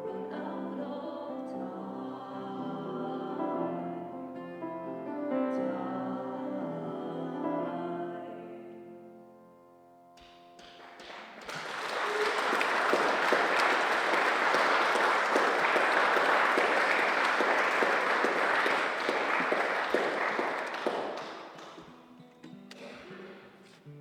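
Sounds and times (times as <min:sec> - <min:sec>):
audience applauding: 0:10.2 - 0:22.0.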